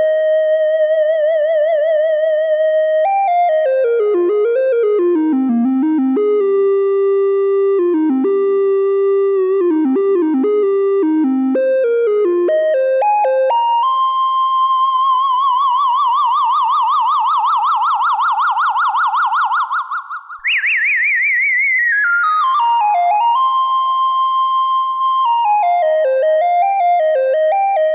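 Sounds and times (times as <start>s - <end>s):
synthesizer flute melody: 7.8s - 27.9s.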